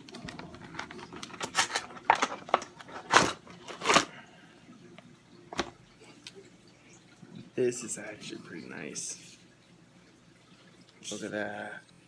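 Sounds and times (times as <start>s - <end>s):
plastic packaging crinkling: 0.1s - 4.1s.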